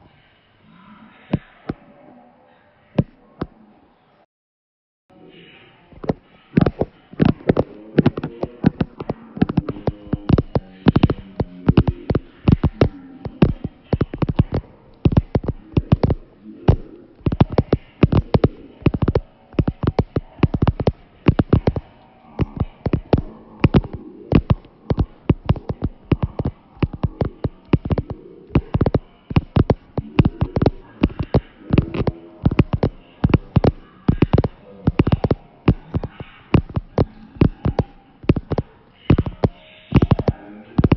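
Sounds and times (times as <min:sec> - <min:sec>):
sharp taps or clicks: 0:06.0 - 0:21.8, 0:22.4 - 0:40.9.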